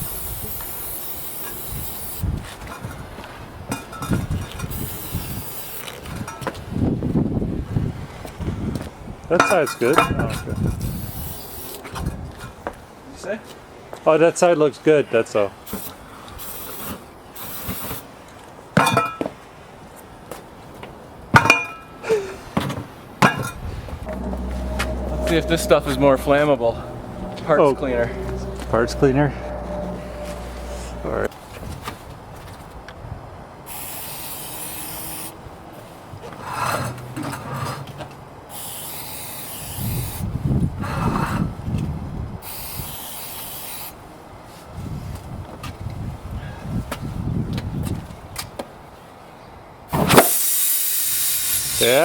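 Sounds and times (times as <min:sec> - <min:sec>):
compressed air hissing: 0:00.0 - 0:02.3, 0:04.7 - 0:05.8, 0:10.9 - 0:11.8, 0:15.7 - 0:18.0, 0:33.7 - 0:35.3, 0:38.5 - 0:40.2, 0:42.4 - 0:44.0, 0:50.2 - 0:52.0.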